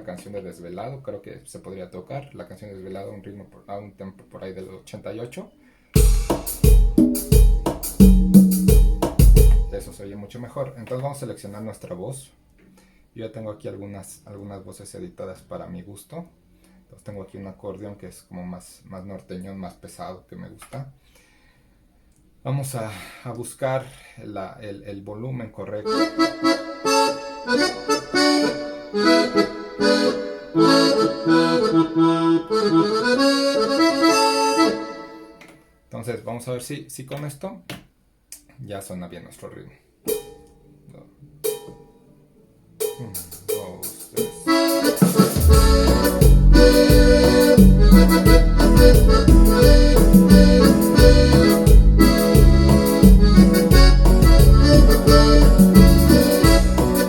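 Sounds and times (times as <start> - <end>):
keyboard accordion melody with chords: 6.0 - 9.9, 25.8 - 35.6, 44.2 - 57.0.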